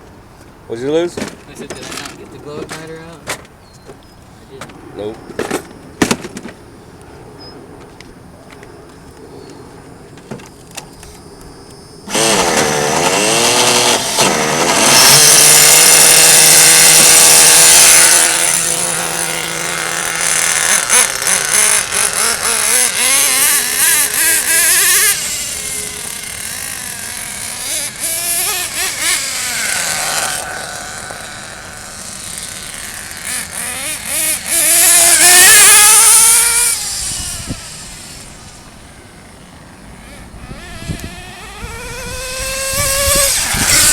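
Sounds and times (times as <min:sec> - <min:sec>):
small rc car engine revving: 0:12.0 - 0:43.9.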